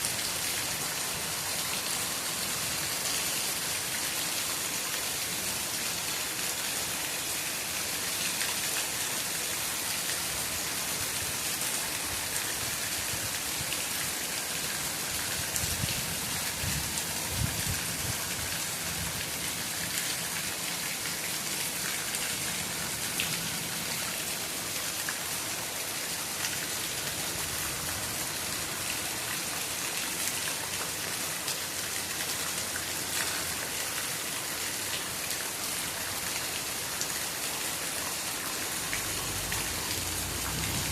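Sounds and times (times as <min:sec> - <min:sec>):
steady rain hiss: 0:00.0 - 0:40.9
raindrops ticking on surfaces: 0:07.6 - 0:40.9.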